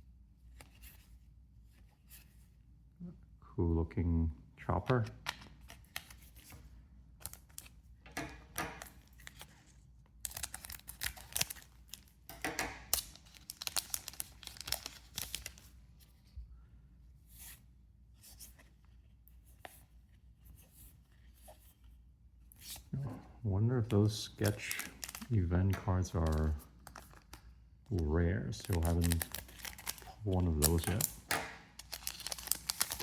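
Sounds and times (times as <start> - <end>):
cards rustling and clicking: 4.8 - 16.3, 23.8 - 33.0
wrapper tearing and crinkling: 10.2 - 12.1, 12.8 - 15.7, 24.3 - 25.4, 28.5 - 33.0.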